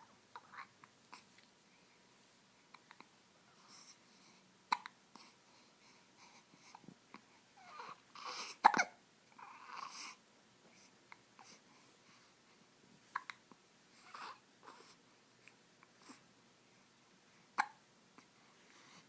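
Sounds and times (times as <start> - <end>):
breathing: 3.6 - 4.5, 5.1 - 7.4, 9.9 - 12.7, 18.4 - 19.0
person hiccuping: 17.6 - 17.8.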